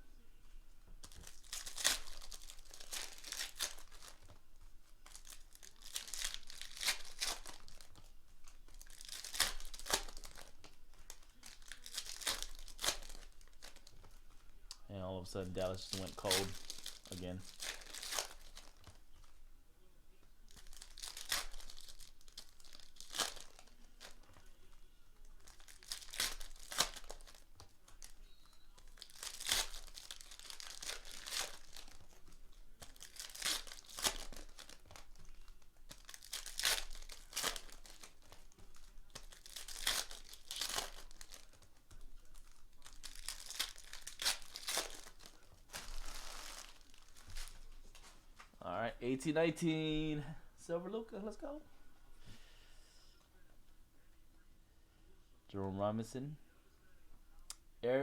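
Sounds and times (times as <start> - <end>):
foil wrappers torn and crinkled: 1.0 - 4.4, 5.0 - 14.2, 15.5 - 19.3, 20.5 - 47.7.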